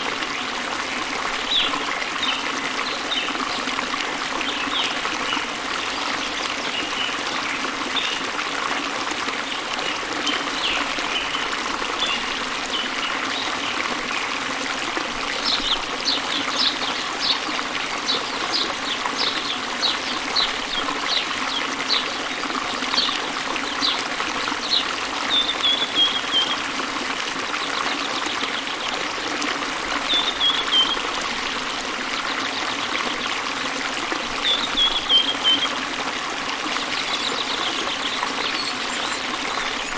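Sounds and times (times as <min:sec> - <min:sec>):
birds singing: 0:15.3 - 0:26.7, 0:30.0 - 0:31.6, 0:34.4 - 0:35.8, 0:36.7 - 0:39.9.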